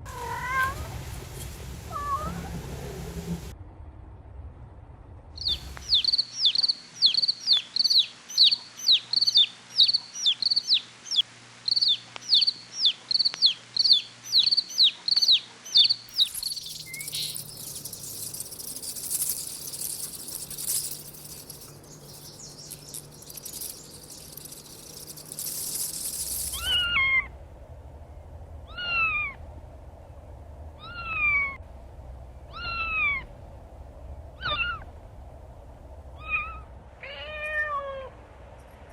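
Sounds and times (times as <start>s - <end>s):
kitten meowing: 0.1s - 0.9s, 26.6s - 27.3s, 28.7s - 29.4s, 30.8s - 31.6s, 32.5s - 33.2s, 34.4s - 34.9s, 36.2s - 38.1s
high hiss: 16.1s - 27.0s
short high squeaks falling in pitch: 16.1s - 27.3s.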